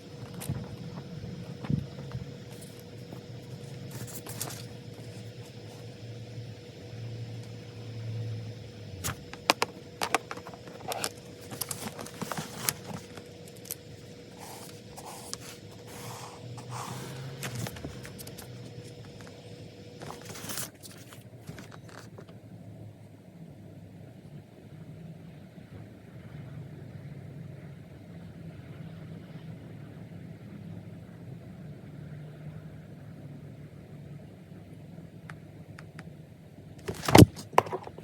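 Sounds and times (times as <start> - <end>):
steady low hum: 0.0 - 38.0
pen and paper scraping clicks: 1.6 - 5.8, 9.0 - 13.8, 14.4 - 19.3, 20.0 - 22.2, 36.8 - 37.9.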